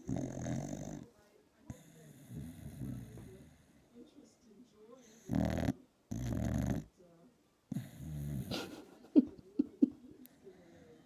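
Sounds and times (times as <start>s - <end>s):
dog snoring loudly: 0.0s - 1.0s, 1.8s - 3.3s, 5.2s - 6.9s, 7.7s - 8.6s.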